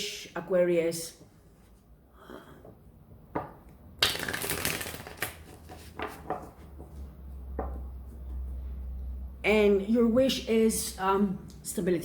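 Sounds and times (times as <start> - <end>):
cards being shuffled: 4.0 - 7.0.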